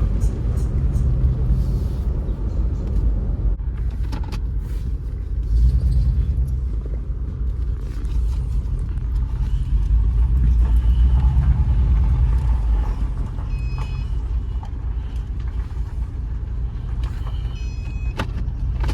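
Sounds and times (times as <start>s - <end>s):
car engine rumbling: 0.0s - 18.9s.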